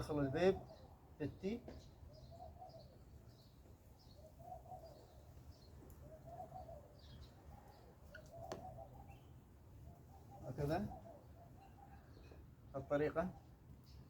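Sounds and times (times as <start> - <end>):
low cooing bird call: 1.7 - 13.5.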